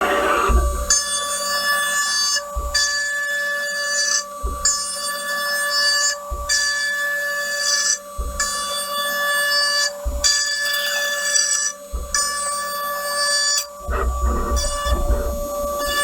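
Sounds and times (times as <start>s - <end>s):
spindle cutting wood whine: 0.0s - 16.0s
low thump: 0.4s - 1.0s, 13.9s - 16.0s.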